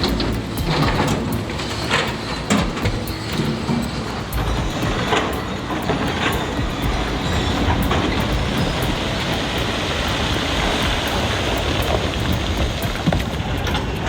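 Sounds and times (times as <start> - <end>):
excavator working: 0.0 - 14.0
metal clanks: 0.0 - 14.0.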